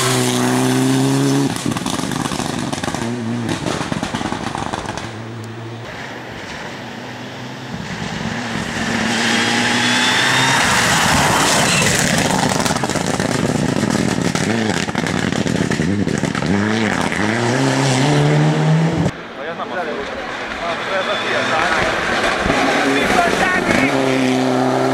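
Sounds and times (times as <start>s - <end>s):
rally car engine revving: 0.0s - 19.1s, 20.5s - 24.9s
loud rushing noise: 1.4s - 16.4s.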